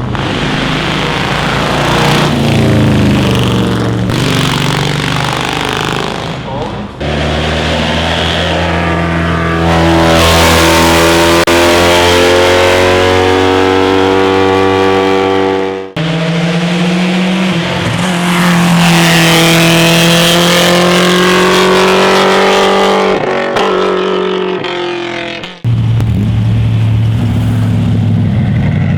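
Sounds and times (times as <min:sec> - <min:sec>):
racing car engines at high revs: 0:00.0 - 0:28.9.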